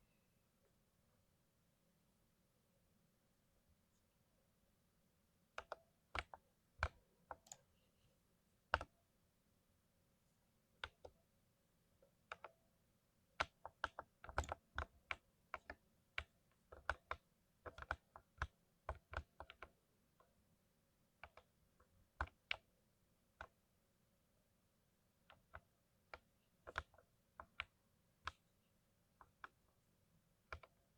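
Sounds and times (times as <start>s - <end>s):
mechanical keyboard typing: 13.4s - 19.8s, 25.3s - 28.4s.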